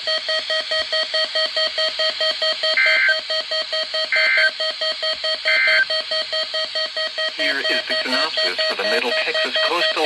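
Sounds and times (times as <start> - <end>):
radio alert alarm beeping rapidly: 2.1 - 10.0.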